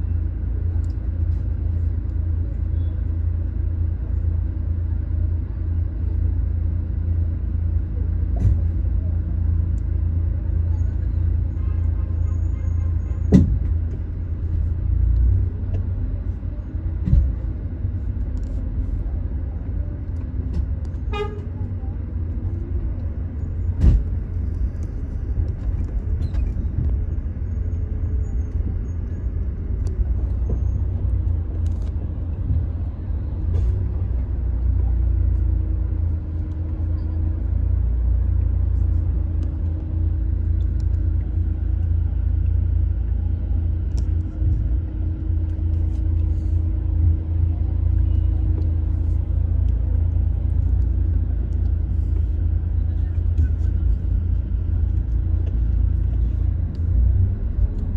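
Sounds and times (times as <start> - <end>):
vehicle rumble: 0.0 - 57.9
car horn toot: 21.1 - 21.5.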